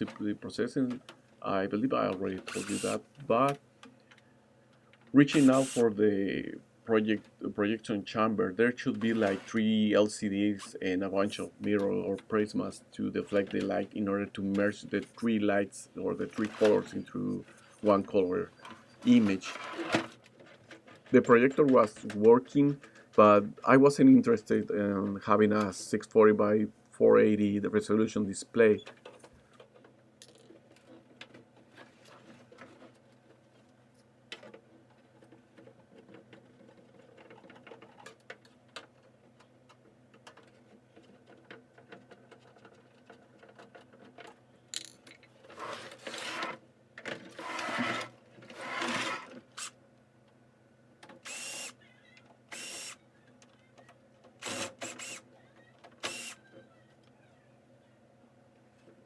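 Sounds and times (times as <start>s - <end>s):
small clicks and taps of parts: 34.3s - 45.3s.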